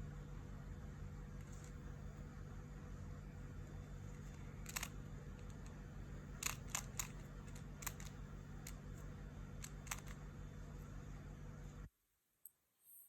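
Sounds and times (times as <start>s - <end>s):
low steady hum: 0.0s - 13.0s
rubik's cube plastic clicks: 4.6s - 5.8s, 6.4s - 8.8s, 9.6s - 10.2s.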